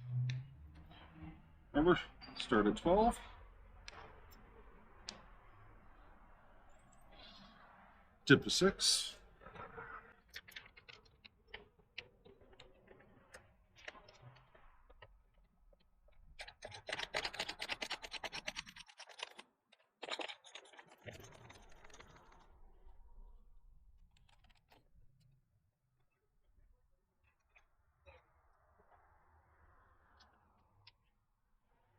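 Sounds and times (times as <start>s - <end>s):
clicks: 2.2s - 5.4s
rapid scratching: 16.4s - 19.4s.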